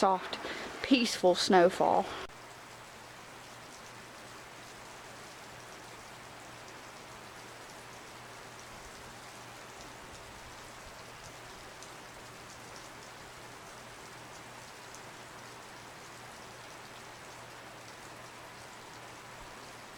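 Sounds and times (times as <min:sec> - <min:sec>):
hiss of falling snow: 0:00.1 - 0:02.3.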